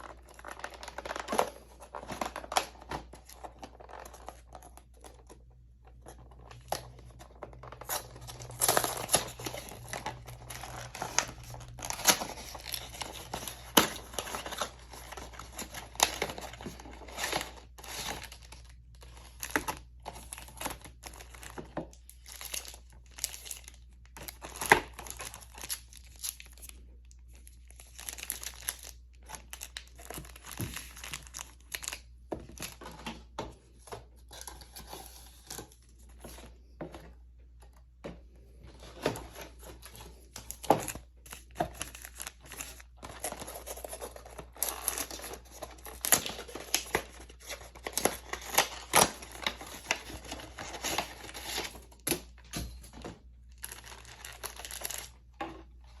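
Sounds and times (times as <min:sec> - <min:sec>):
packaging torn and crinkled: 0:06.2 - 0:32.1, 0:40.4 - 0:52.2, 0:53.5 - 0:55.3.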